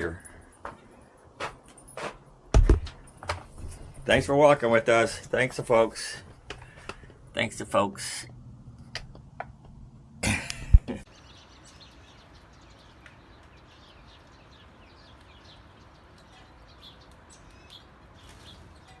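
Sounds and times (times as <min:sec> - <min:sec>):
faint bird chirps: 0:11.1 - 0:19.0.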